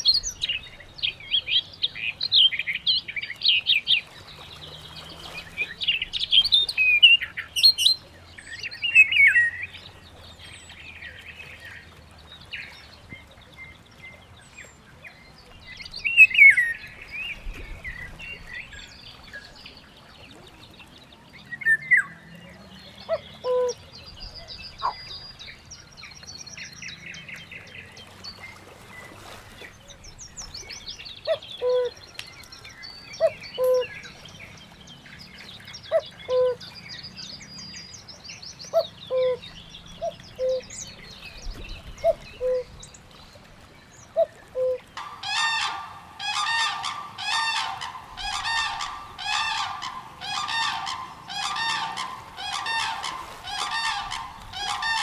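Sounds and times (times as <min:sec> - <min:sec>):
birds chirping: 0:00.0 - 0:55.0
low-pitched bird calls: 0:44.2 - 0:55.0.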